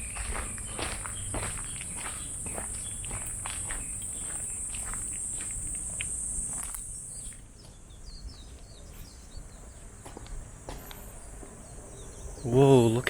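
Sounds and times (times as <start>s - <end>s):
cicada buzzing: 0.0s - 7.4s
footsteps: 0.0s - 7.8s, 8.4s - 11.6s
bird chirps: 0.0s - 13.0s.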